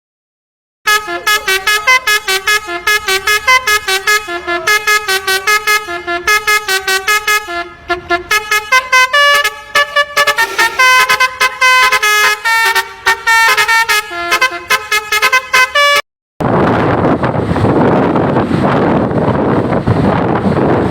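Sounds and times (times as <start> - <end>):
bus air horn melody: 0.8 - 16.0.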